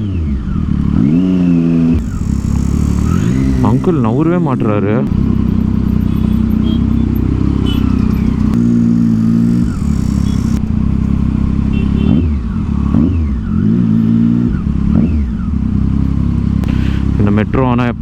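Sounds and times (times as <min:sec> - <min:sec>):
motorcycle engine at low revs: 0:00.0 - 0:18.0
motorcycle throttle blips: 0:00.5 - 0:12.3.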